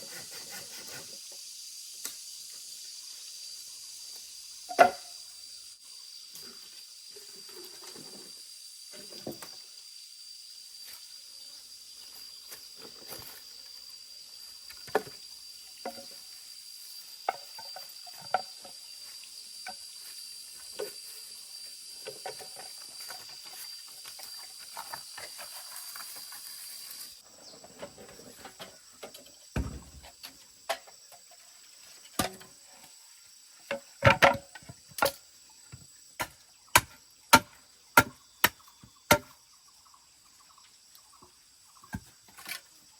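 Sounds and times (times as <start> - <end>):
steady high-pitched hiss: 0.0 - 42.9
small knocks and clatter: 17.2 - 18.8, 33.7 - 36.4.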